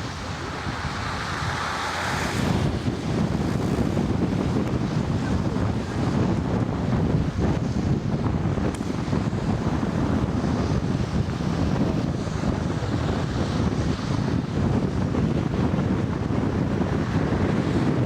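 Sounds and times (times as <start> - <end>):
wind blowing across microphone: 0.0 - 18.0.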